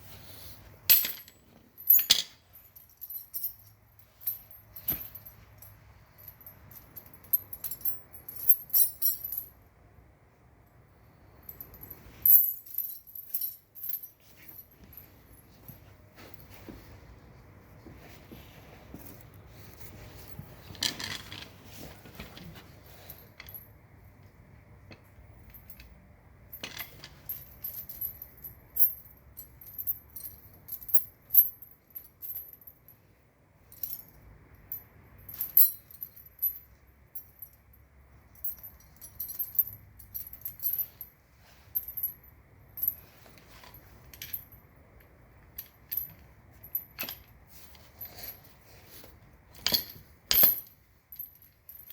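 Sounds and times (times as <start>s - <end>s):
metal chain links clinking: 0.8s - 9.6s, 11.2s - 16.5s, 25.1s - 33.0s, 33.6s - 51.9s.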